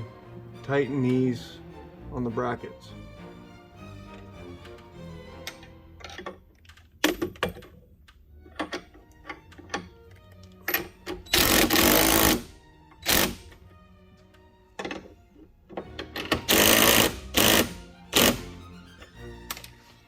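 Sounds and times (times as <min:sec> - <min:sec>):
metal hardware clicking and knocking: 0:05.4 - 0:11.3, 0:14.8 - 0:16.5
power driver running: 0:11.4 - 0:12.4, 0:16.5 - 0:18.4.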